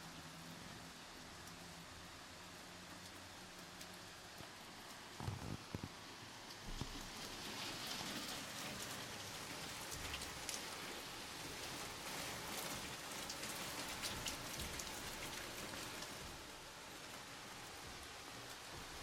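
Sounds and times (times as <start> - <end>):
steady rain hiss: 0.0 - 19.0.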